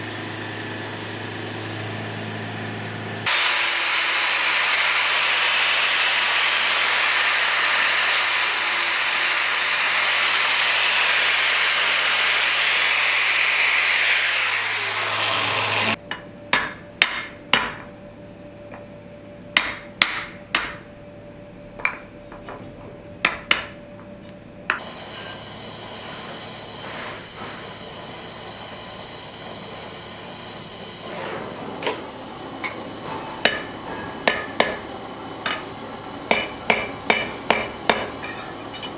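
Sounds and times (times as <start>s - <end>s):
power tool humming: 0.0s - 16.0s, 30.0s - 38.9s.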